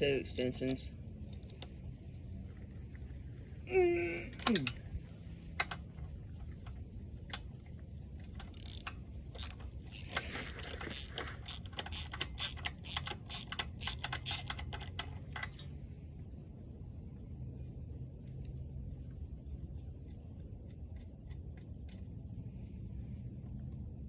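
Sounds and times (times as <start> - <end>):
socket ratchet clicking: 4.4 - 4.8, 8.4 - 15.6.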